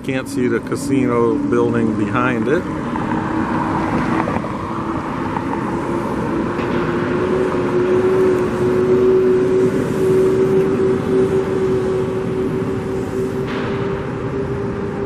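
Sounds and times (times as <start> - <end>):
motor vehicle hum: 0.0 - 15.0
road noise rush: 0.0 - 15.0.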